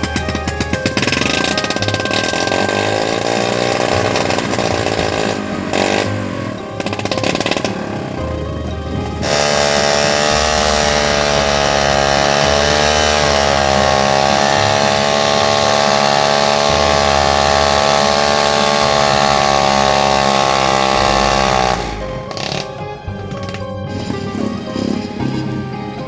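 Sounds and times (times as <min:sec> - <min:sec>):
motorcycle engine at high revs: 0:00.0 - 0:08.2, 0:09.2 - 0:22.7.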